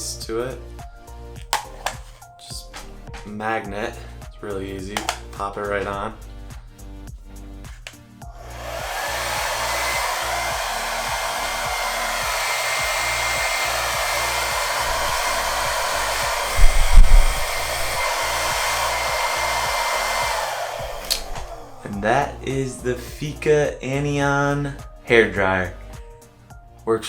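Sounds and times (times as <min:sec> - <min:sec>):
hair dryer blowing air: 0:01.6 - 0:03.3, 0:05.0 - 0:06.2, 0:07.8 - 0:23.4.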